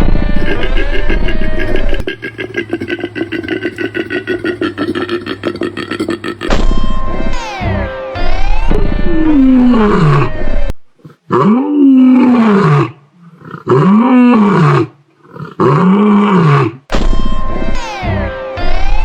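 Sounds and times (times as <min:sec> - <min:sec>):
animal moaning calls: 0:00.0 - 0:06.6, 0:09.1 - 0:16.7.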